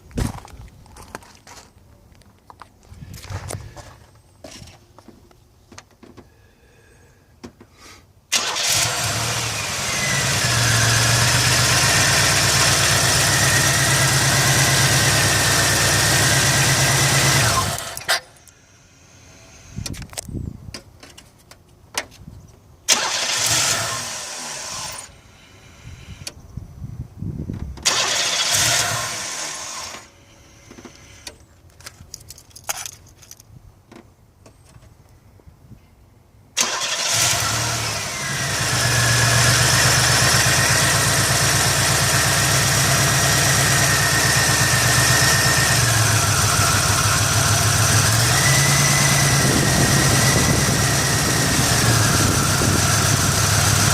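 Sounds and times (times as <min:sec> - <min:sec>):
car engine starting and running: 0:08.3 - 0:18.5, 0:22.9 - 0:26.4, 0:27.8 - 0:31.4, 0:36.6 - 0:53.9.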